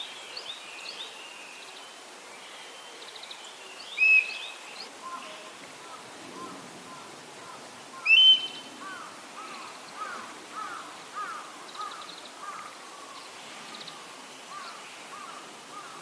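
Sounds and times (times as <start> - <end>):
bird short arched calls: 8.0 - 12.6.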